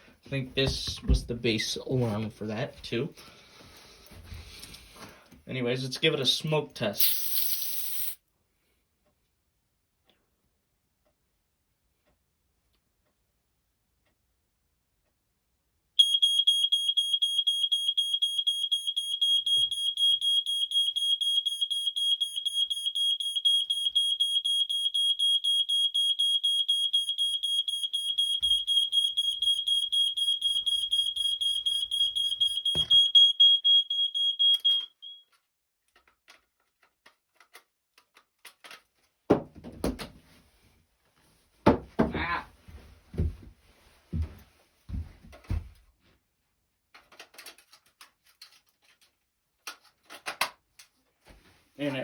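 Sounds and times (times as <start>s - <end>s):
smoke alarm shrill pulsing tone: 16.0s - 35.3s.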